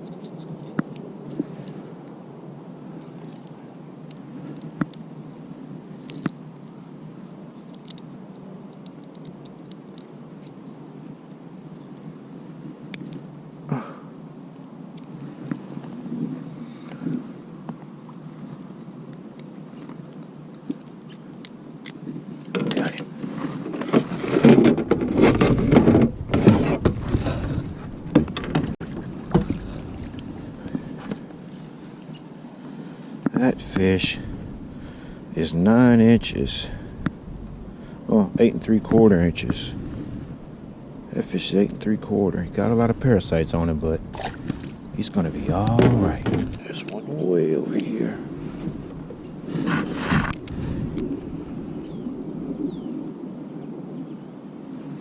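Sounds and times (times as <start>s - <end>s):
wind: 0.0s - 55.0s
water rushing: 26.8s - 32.1s, 32.9s - 49.6s
sharp clicks and knocks: 28.0s - 29.7s
fish splashing and scuffling: 44.0s - 44.8s.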